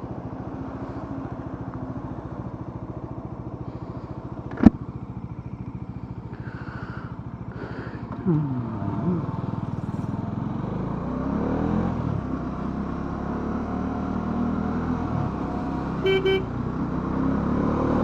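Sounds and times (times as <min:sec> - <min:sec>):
motorcycle engine idling: 0:00.0 - 0:11.0, 0:15.2 - 0:16.8.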